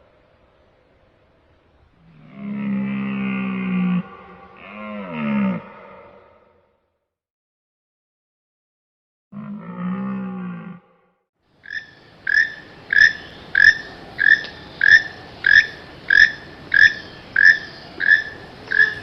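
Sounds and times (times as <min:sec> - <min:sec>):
low drawn-out animal call: 0:01.8 - 0:06.9, 0:09.4 - 0:19.0
short repeated higher animal calls: 0:11.6 - 0:19.0
steady hiss: 0:11.9 - 0:19.0.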